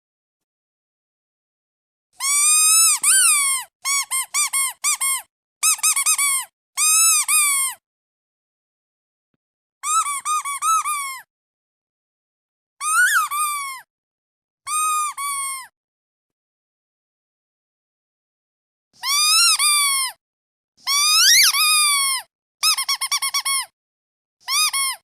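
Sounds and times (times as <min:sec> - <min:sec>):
squeaky duck toy squeaking: 0:02.2 - 0:07.8, 0:09.8 - 0:11.3, 0:12.8 - 0:13.8, 0:14.7 - 0:15.7, 0:19.0 - 0:20.2, 0:20.8 - 0:23.7, 0:24.4 - 0:25.0.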